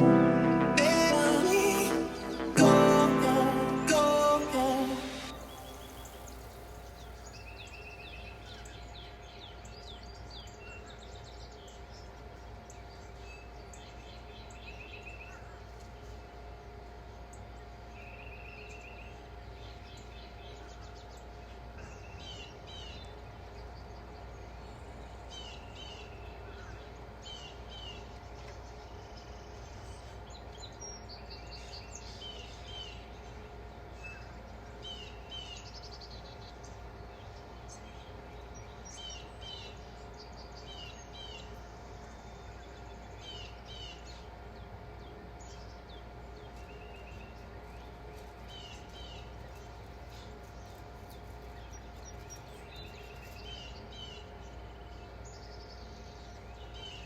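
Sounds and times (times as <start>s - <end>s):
faint steady hum: 0.0s - 57.0s
small birds chirping: 34.1s - 57.0s.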